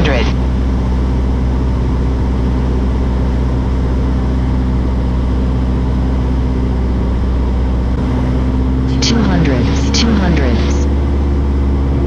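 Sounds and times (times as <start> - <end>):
aircraft engine and propeller droning: 0.0 - 12.0.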